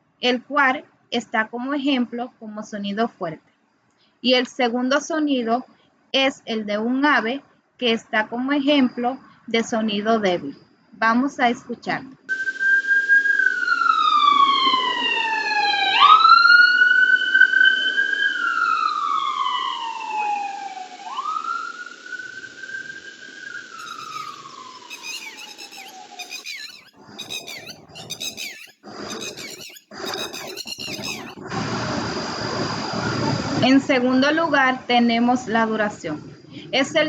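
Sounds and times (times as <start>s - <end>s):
ambulance siren wailing: 13.4s - 26.2s
bird chirping: 23.7s - 31.4s.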